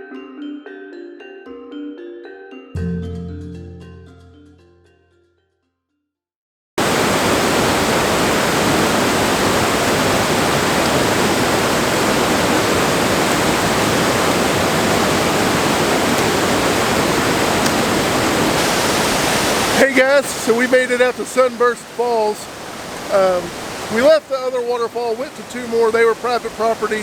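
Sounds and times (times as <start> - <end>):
waterfall pouring: 6.8 - 27.0.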